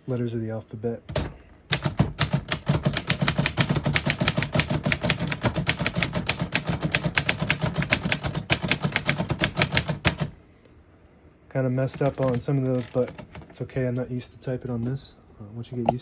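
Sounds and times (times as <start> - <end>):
typewriter key strikes: 1.1 - 10.3, 11.9 - 13.5.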